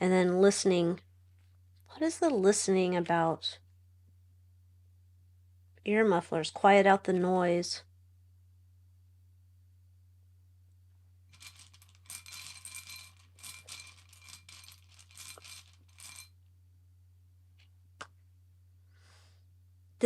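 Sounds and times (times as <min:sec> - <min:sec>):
metal tokens clinking: 0:11.3 - 0:16.3.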